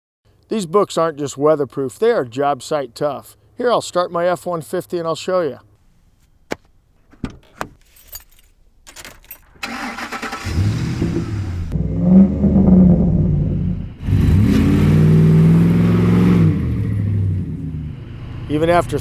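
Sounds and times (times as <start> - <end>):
keys jingling: 7.4 - 9.6
truck engine cranking and revving: 9.4 - 19.0.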